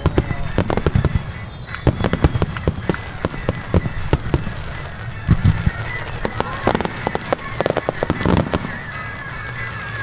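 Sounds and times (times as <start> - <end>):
fireworks bangs and crackles: 0.0 - 10.0.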